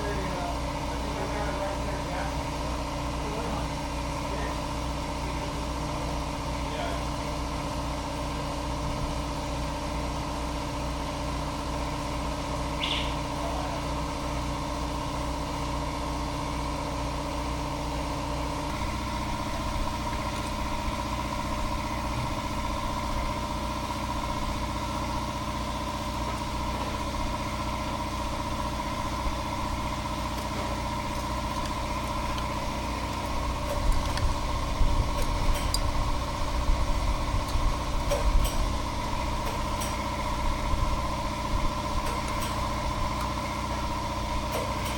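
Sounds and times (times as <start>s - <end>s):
lawn mower engine running: 0.0s - 44.9s
knocks and rattles: 18.7s - 44.9s.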